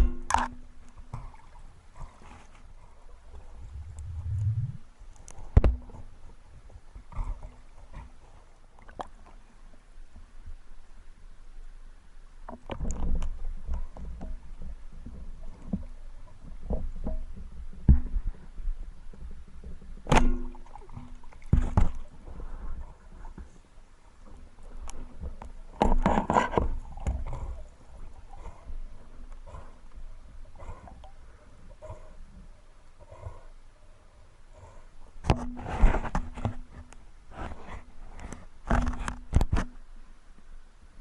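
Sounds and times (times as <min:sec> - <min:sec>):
low rumble: 0:03.4 - 0:05.0.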